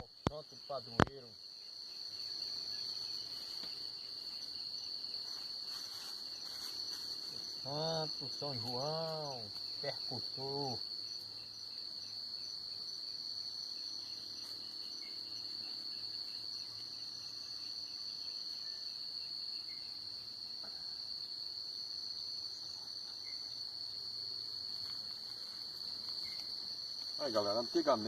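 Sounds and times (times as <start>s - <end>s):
crickets trilling: 0.0s - 28.0s
fainter insect call: 0.0s - 28.0s.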